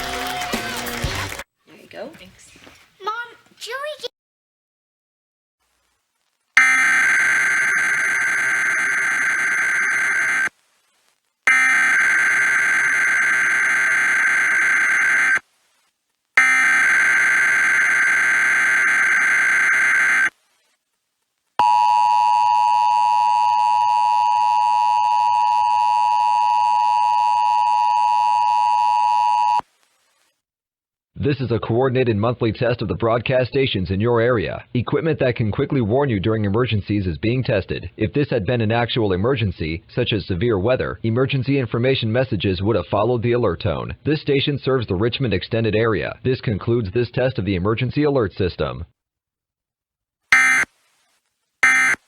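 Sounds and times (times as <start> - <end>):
two-tone attention signal: 50.4 - 50.7, 51.6 - 52.0.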